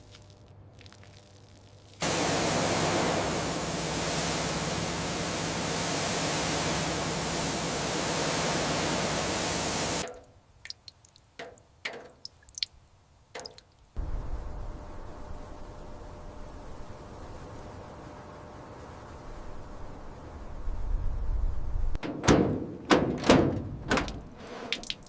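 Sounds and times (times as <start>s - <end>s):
high-pressure spray hissing: 2.0s - 10.0s
low machine hum: 2.0s - 10.0s, 14.0s - 22.0s.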